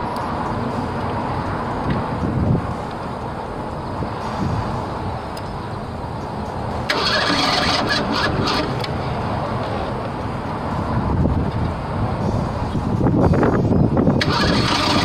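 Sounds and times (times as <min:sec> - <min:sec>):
engine cranking without starting: 0:06.8 - 0:09.1, 0:14.2 - 0:15.0.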